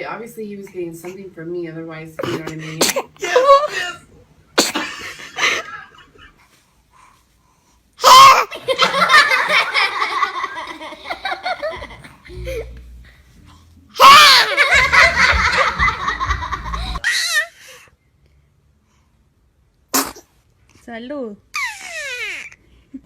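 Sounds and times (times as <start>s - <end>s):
baby sneezing: 2.2s - 3.2s, 4.6s - 5.2s, 8.0s - 8.5s, 19.9s - 20.4s
person laughing: 8.6s - 12.8s, 14.2s - 17.0s.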